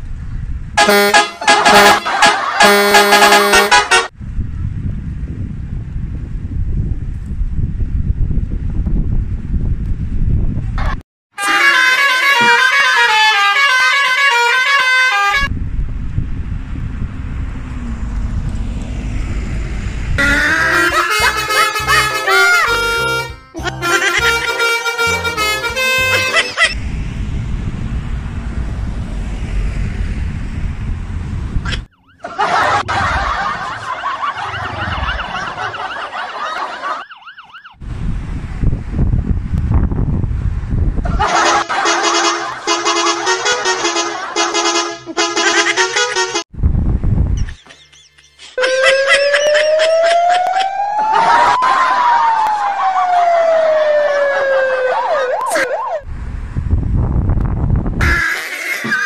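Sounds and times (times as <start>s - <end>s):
low vehicle rumble: 0.0s - 11.0s, 15.1s - 37.0s, 37.8s - 45.7s, 46.4s - 58.2s
musical vehicle horn tune: 0.8s - 4.1s, 11.3s - 15.5s, 20.2s - 26.8s, 41.2s - 46.5s
low rumbling noise: 15.5s - 22.1s, 26.8s - 36.8s, 46.6s - 47.5s, 56.0s - 58.0s
emergency siren yelping: 20.2s - 26.8s, 31.9s - 37.8s, 48.6s - 56.1s.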